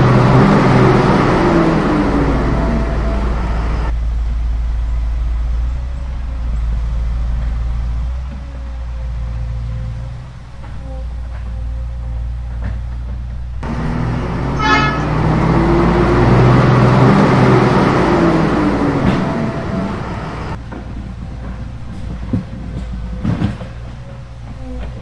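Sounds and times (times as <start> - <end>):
horn toot: 0.0 - 3.9, 13.6 - 20.6
rushing noise: 0.0 - 24.4
truck engine running: 0.0 - 25.0.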